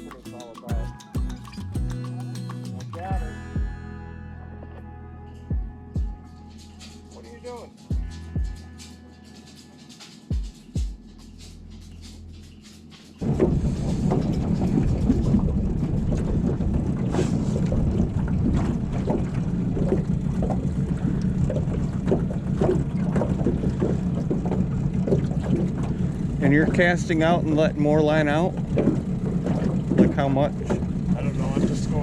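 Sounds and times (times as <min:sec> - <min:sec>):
low hum: 0:00.7 - 0:32.0
wind buffeting microphone: 0:13.2 - 0:32.0.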